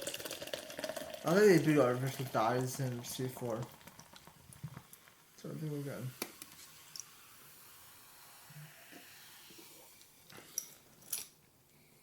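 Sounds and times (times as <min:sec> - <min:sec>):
drink fizzing in a cup: 0:00.0 - 0:05.5.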